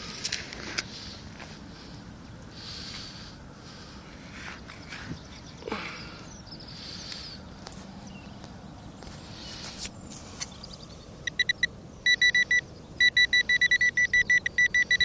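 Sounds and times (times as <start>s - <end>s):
scraping in soil: 2.6s - 6.0s, 9.0s - 10.7s
metal detector beeping: 11.2s - 15.0s.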